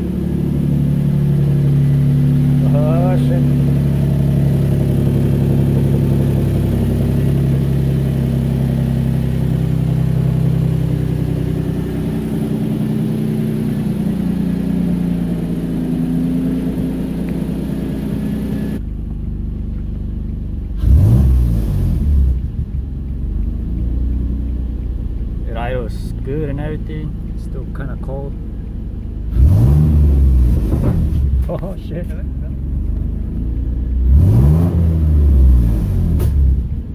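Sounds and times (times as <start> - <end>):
car engine idling: 0.0 - 36.9
engine revving: 0.0 - 36.9.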